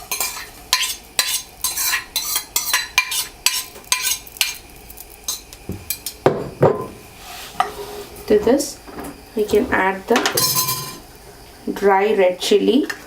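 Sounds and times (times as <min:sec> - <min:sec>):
spatula scraping frying pan: 0:00.0 - 0:04.6, 0:07.1 - 0:08.6.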